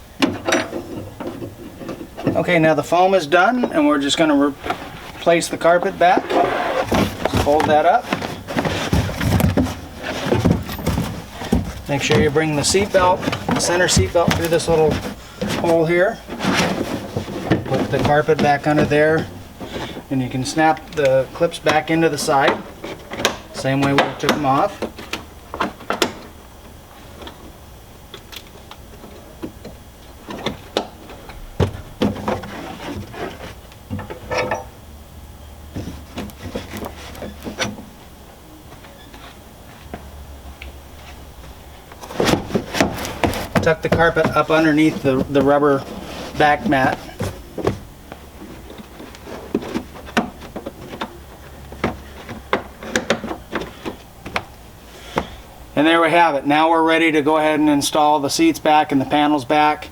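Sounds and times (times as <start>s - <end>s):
carpet rustling: 0.3s - 27.6s, 35.6s - 55.4s.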